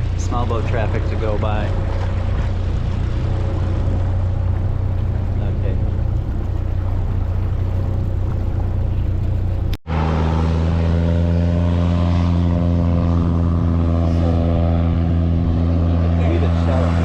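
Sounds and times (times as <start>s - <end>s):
engine humming: 0.0s - 17.0s.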